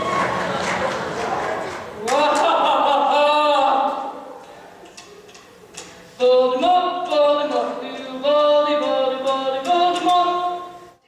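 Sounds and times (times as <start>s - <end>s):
voices singing a cappella: 6.2s - 10.8s.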